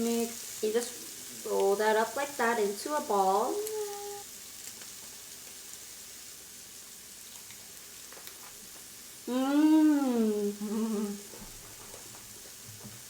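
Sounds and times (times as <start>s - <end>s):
meat sizzling on grill pan: 0.0s - 13.0s
person humming mmm: 3.6s - 4.2s, 9.3s - 11.4s.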